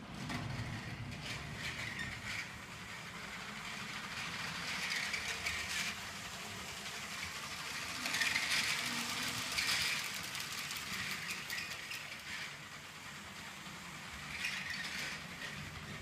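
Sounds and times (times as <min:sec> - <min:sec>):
toy train motor rattling whir: 0:00.2 - 0:16.0.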